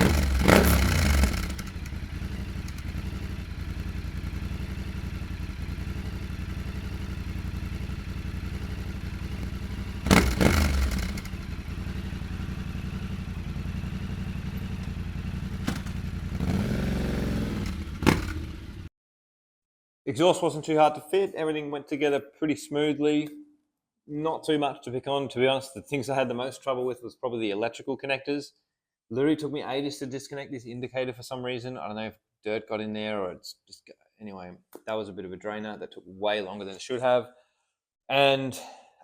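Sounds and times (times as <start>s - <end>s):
engine revving: 0.0s - 18.9s
motorcycle engine idling: 0.0s - 18.9s.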